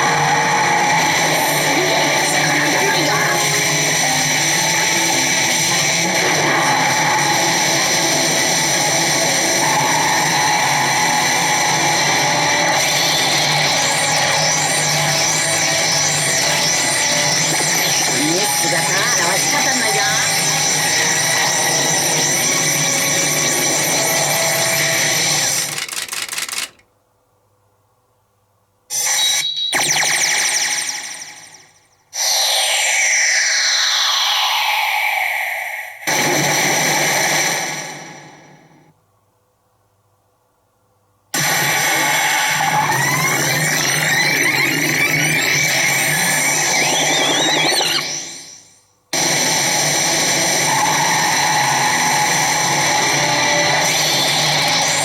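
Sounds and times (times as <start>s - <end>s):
pachinko machine clatter: 12.7s - 19.9s, 20.6s - 26.9s, 53.9s - 55.0s
clatter of steel balls: 25.4s - 26.8s.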